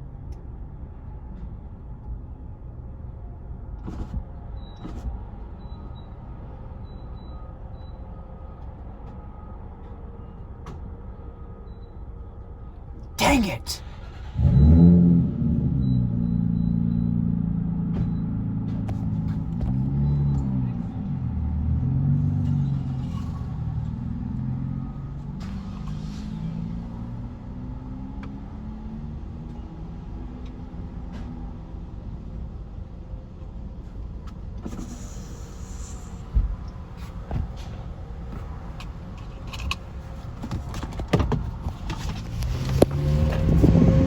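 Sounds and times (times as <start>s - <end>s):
car engine rumbling: 33.2s - 44.0s
clicks and handling noises: 38.8s - 39.8s.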